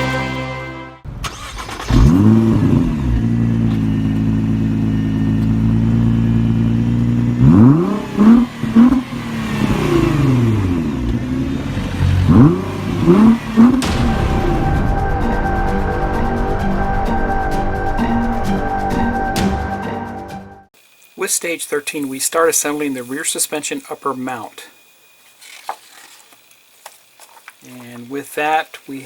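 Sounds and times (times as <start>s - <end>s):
music: 0.0s - 1.1s, 13.8s - 20.7s
car engine idling and revving: 1.3s - 19.6s.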